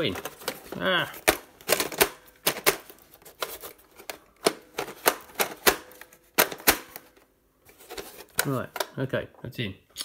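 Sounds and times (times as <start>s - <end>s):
plastic toy parts clicking: 1.2s - 7.0s.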